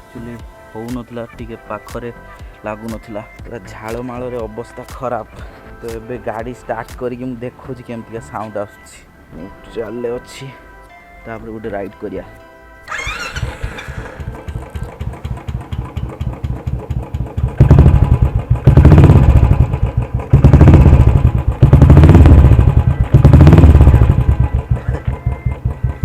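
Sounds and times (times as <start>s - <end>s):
motorcycle engine idling: 0.1s - 8.2s, 12.9s - 26.0s
motorcycle engine revving: 12.9s - 26.0s.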